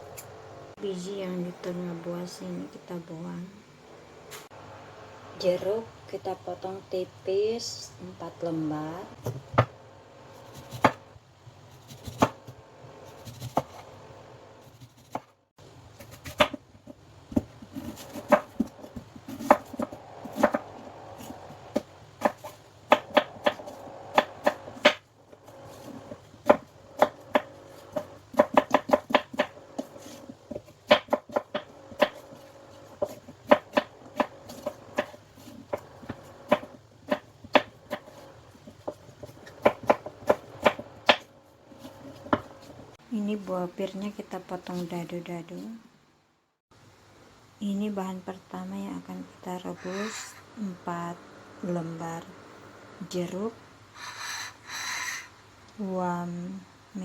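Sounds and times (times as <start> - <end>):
knife chopping on cutting board: 10.4 - 11.0, 11.8 - 13.9, 16.0 - 16.6, 17.3 - 42.7.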